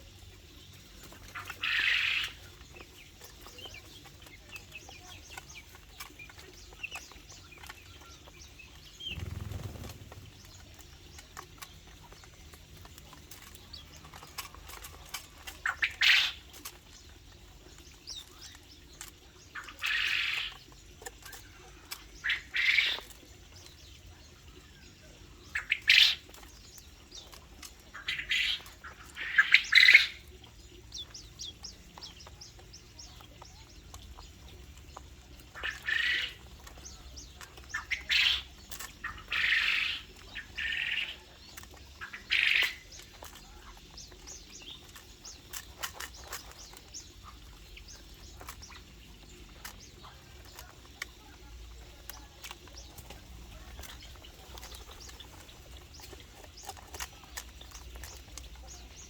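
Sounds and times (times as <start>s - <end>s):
high bird chirps: 0.0s - 12.3s, 25.4s - 59.0s
harsh bird calls: 0.0s - 59.0s.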